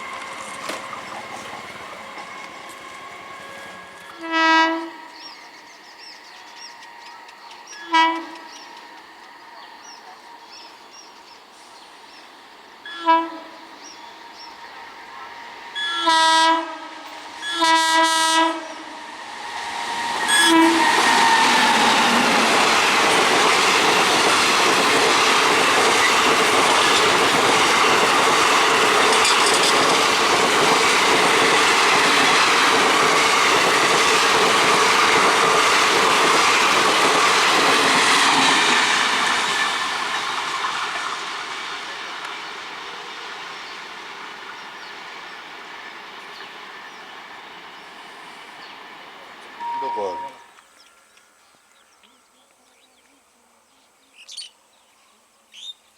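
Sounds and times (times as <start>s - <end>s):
wheel clatter on rails: 0.0s - 4.2s
train horn blasts: 0.0s - 5.4s, 6.9s - 9.7s, 12.8s - 23.0s, 49.6s - 50.6s
train passing rumble: 0.0s - 50.9s.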